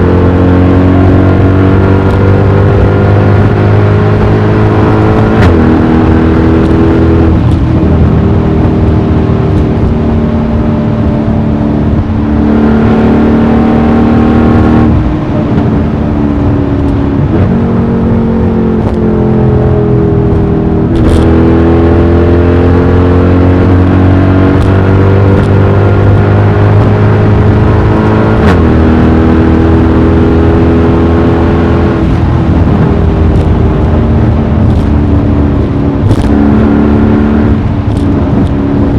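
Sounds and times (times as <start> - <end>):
car engine with gear changes: 0.0 - 38.9
exhaust crackle: 31.8 - 38.9.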